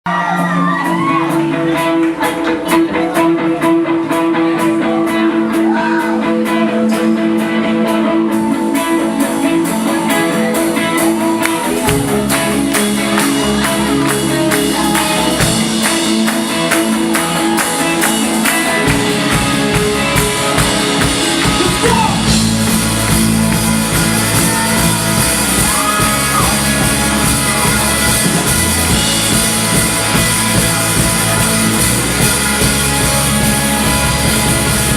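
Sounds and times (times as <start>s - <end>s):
live rock band playing: 0.1s - 34.9s.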